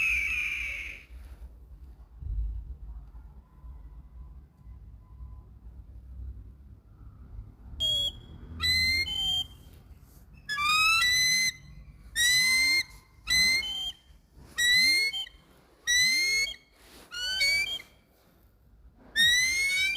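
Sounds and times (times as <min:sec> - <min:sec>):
kite's shrill whistling calls: 0:00.0 - 0:01.2, 0:07.8 - 0:09.7, 0:10.5 - 0:18.0, 0:19.2 - 0:19.9.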